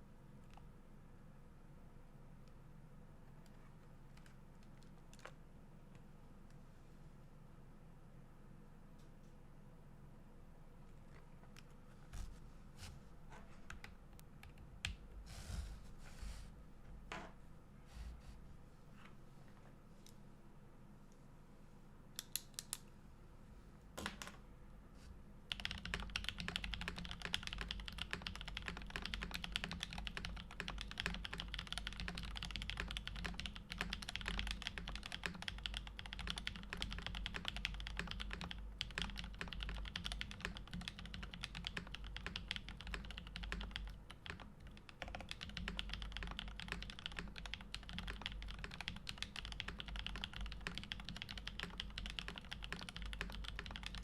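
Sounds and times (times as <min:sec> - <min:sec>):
typing on mechanical keyboard: 0:25.5 - 0:54.0.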